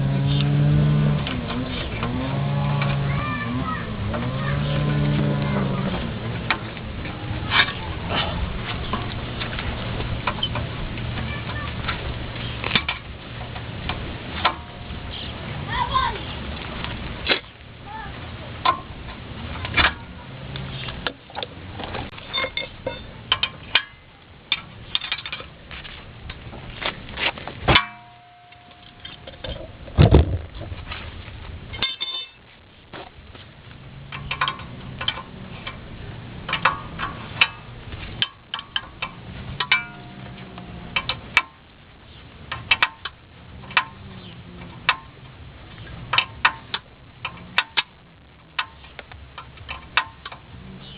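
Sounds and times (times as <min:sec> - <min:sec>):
hand tools clinking on metal: 0:27.7 - 0:29.8, 0:31.8 - 0:32.4, 0:36.5 - 0:41.6.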